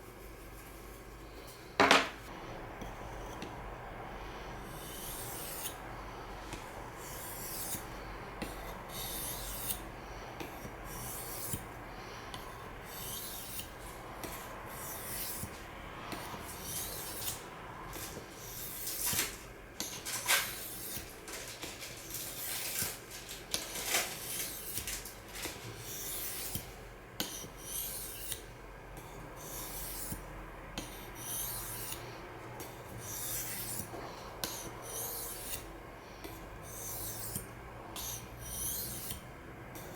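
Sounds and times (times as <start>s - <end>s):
knife scraping on sharpening stone: 10.6s - 11.6s, 12.9s - 15.5s, 25.9s - 28.5s, 29.4s - 30.2s, 30.8s - 32.0s, 33.0s - 35.7s, 36.6s - 39.2s.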